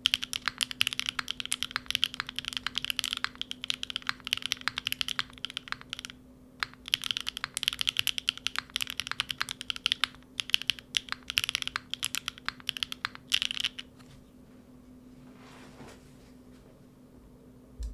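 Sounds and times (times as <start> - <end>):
mechanical keyboard typing: 0.0 - 13.9.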